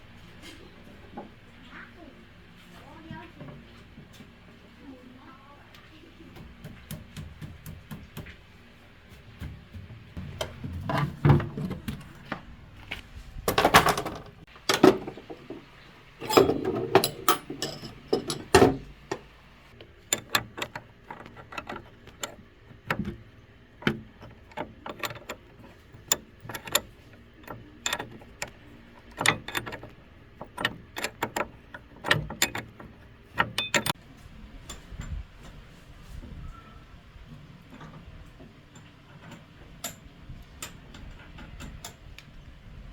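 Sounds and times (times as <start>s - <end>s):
metal tools clinking and knocking: 13.5s - 19.4s, 20.0s - 34.0s.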